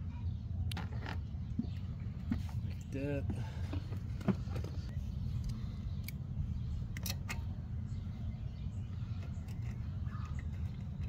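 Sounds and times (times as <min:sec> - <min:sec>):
low background rumble: 0:00.0 - 0:11.0.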